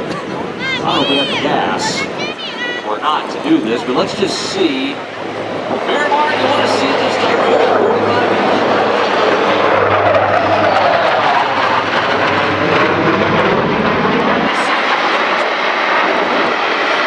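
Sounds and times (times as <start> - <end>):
fighter jet flying past: 0.0 - 17.0.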